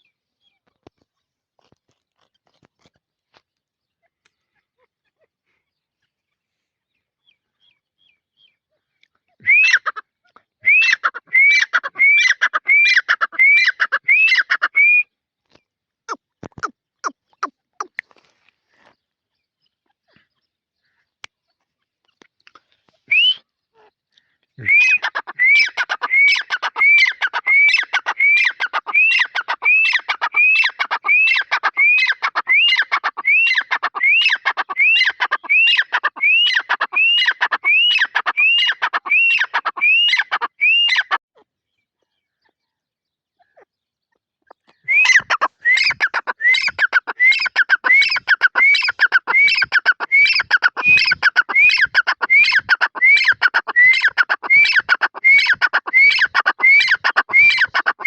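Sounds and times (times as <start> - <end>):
francolin calling: 44.7 - 58.0.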